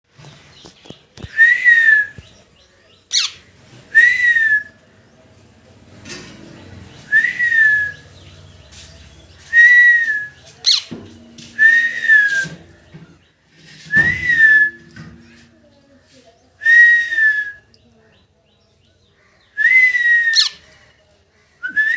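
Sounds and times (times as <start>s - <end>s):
parrot whistled call: 19.6s - 20.6s.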